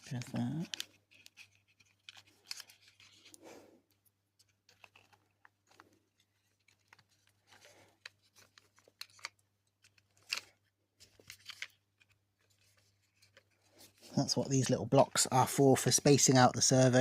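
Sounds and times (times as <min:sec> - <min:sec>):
small parts clicking and scraping: 0:00.4 - 0:13.6.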